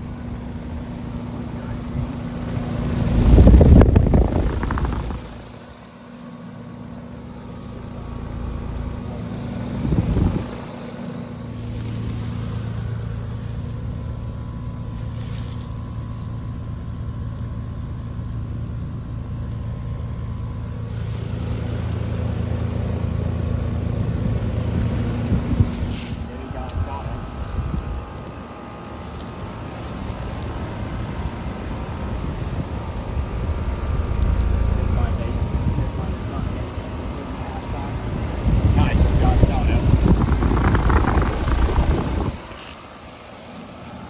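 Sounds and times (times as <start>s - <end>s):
compressor hum: 0.0s - 44.0s
condenser fan rushing: 0.0s - 44.0s
wind buffeting microphone: 0.2s - 5.8s, 7.5s - 13.4s, 20.3s - 28.3s, 29.5s - 42.7s.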